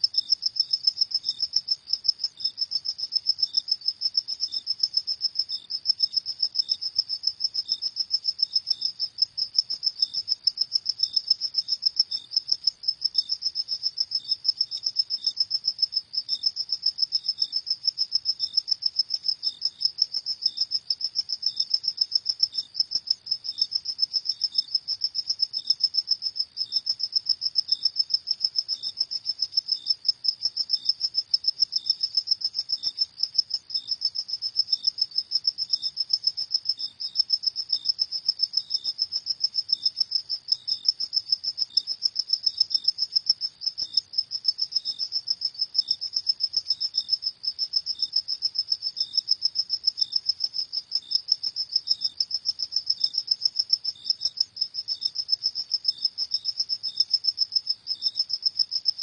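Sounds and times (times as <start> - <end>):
crickets chirping: 0.0 - 59.0
slower cricket chirps: 0.0 - 59.0.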